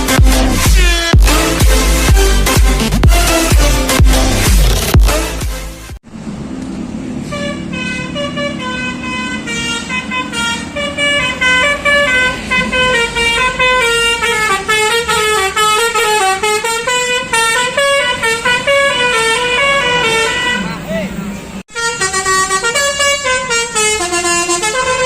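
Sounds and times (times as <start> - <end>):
multi-tone bus horn melody: 0.0 - 6.0, 7.1 - 25.0.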